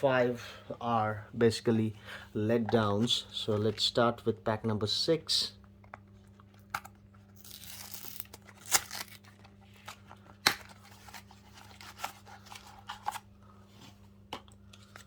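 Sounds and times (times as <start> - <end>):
packaging clicking and crinkling: 5.9 - 13.3
card pack ripping open: 7.4 - 9.5, 10.4 - 13.2.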